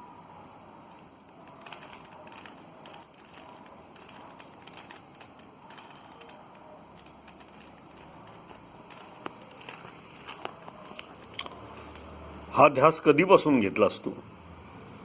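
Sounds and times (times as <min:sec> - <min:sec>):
puzzle cube twisting clicks: 0:01.3 - 0:12.1.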